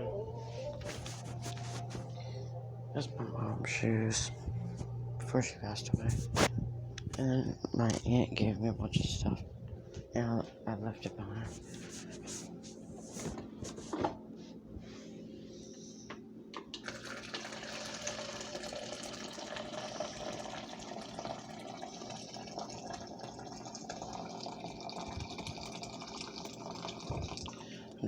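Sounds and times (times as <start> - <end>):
water running from a tap: 16.8 - 27.6.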